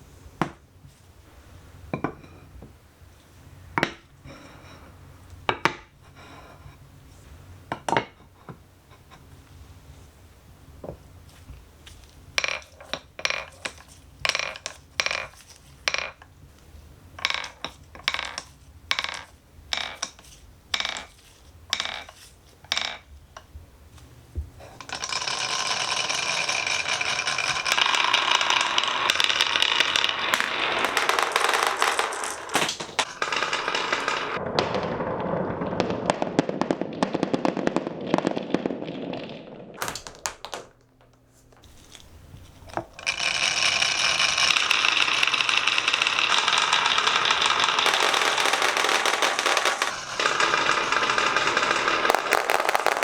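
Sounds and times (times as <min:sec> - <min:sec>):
marbles rolling down wooden slopes: 0:12.3 - 0:16.2, 0:17.2 - 0:23.0, 0:24.7 - 0:53.0
marbles clacking on wooden track: 0:12.4 - 0:16.3, 0:17.2 - 0:23.1, 0:24.8 - 0:53.0.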